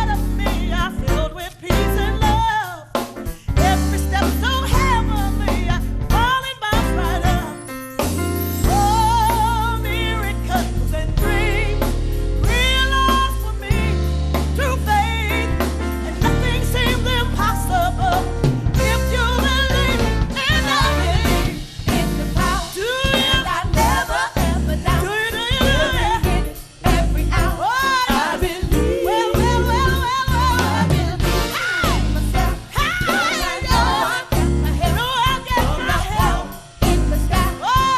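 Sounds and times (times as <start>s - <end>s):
band with bass and drums: 0.0s - 37.9s
woman singing with vibrato: 14.6s - 37.9s.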